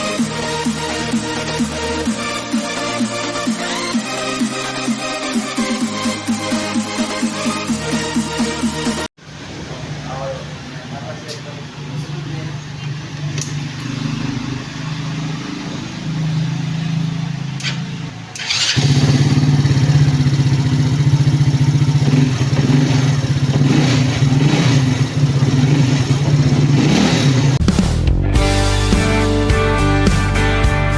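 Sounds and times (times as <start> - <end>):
motorcycle engine humming: 9.2 - 27.6.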